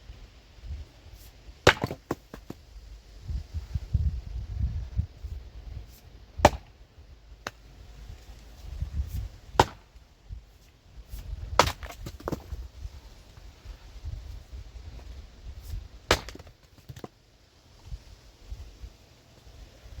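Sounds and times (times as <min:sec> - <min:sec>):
axe chopping wood: 0:01.6 - 0:02.6, 0:06.4 - 0:06.8, 0:09.5 - 0:10.0, 0:11.2 - 0:12.6, 0:16.1 - 0:17.2.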